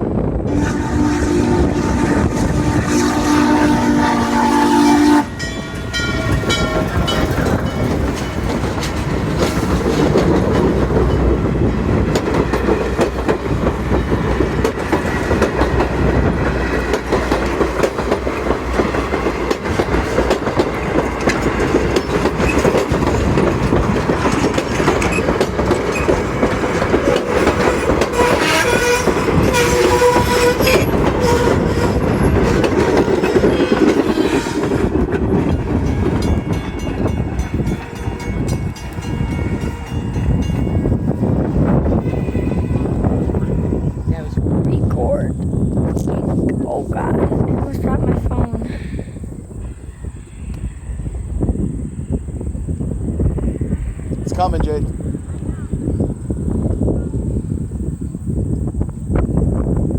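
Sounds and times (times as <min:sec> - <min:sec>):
train rumbling past: 0:00.0 - 0:59.9
train whistle chord: 0:00.5 - 0:06.6
wheels clicking over rail joints: 0:05.4 - 0:43.6.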